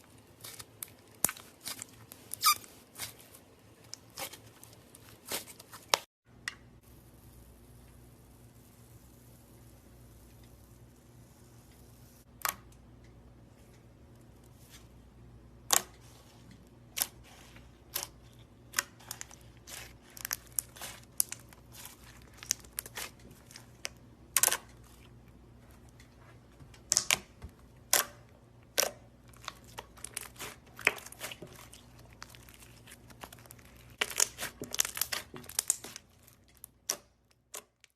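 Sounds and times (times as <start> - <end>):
slime popping and crackling: 27.9 - 37.7.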